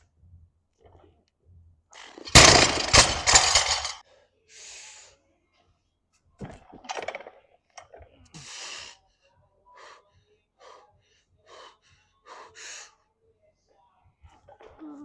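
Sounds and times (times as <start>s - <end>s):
man breathing hard: 9.7s - 13.0s.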